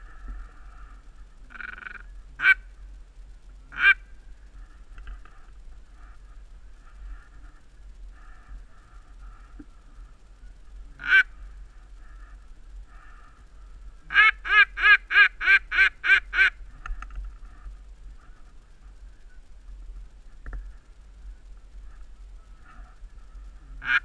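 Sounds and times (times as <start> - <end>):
duck quacking: 1.5 - 2.7, 3.7 - 4.0, 10.9 - 11.3, 14.1 - 16.6, 23.8 - 24.0.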